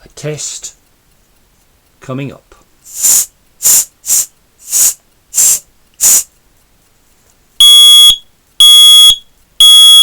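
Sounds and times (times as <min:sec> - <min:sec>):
short hissing bursts: 0:02.8 - 0:06.4
smoke detector alarm beep: 0:07.6 - 0:10.0.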